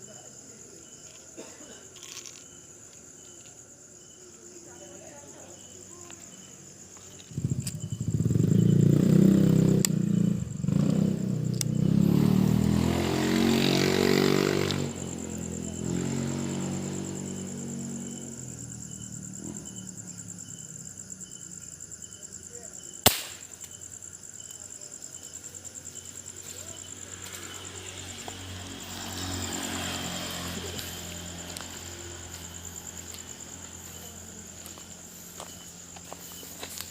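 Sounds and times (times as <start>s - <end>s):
insects chirring: 0.0s - 36.9s
motorcycle engine passing: 7.2s - 20.8s, 25.7s - 36.9s
sharp click: 23.0s - 23.8s.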